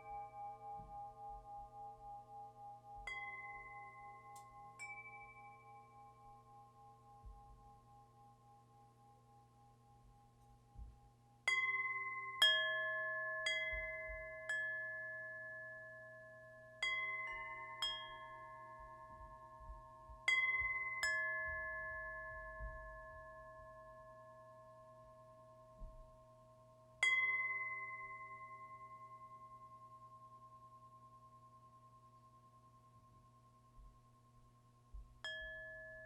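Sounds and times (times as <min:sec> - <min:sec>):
wind chimes ringing: 0:00.0 - 0:06.7.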